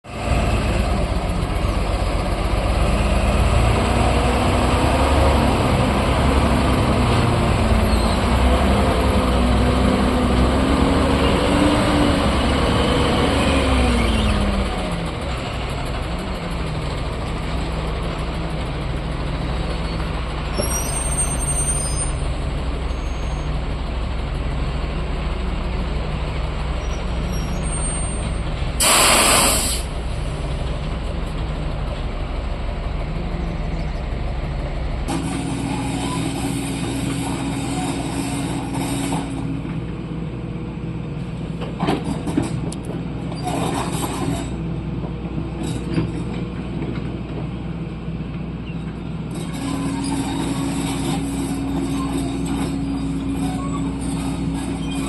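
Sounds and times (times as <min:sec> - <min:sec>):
heavy diesel engines running: 0:00.0 - 0:55.0
air brake hiss: 0:28.8 - 0:30.0.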